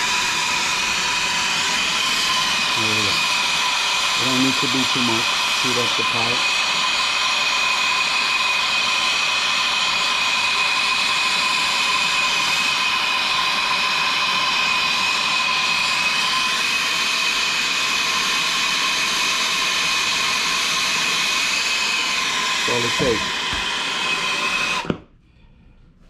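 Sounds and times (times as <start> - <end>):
gas torch hissing with whistle: 0.0 - 25.0.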